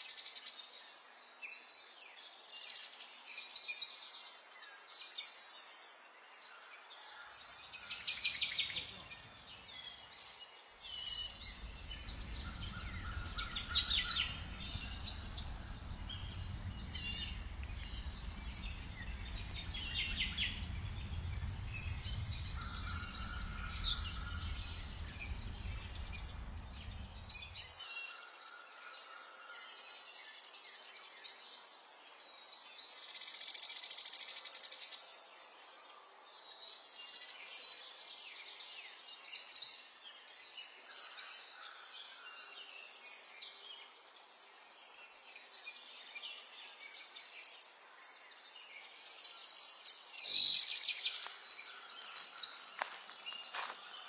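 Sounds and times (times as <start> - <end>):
small birds chirping and trilling: 10.8 - 27.8
low steady rumble: 11.1 - 27.6.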